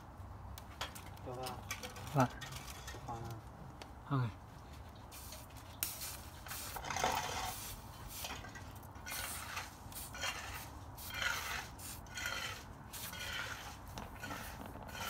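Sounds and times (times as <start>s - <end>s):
hand scraping strokes: 4.7s - 15.0s.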